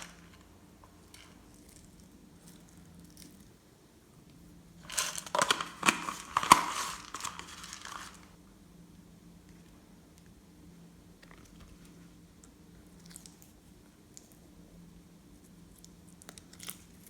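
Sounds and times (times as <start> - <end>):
crinkling handling noise: 0.0 - 3.6, 4.8 - 8.4.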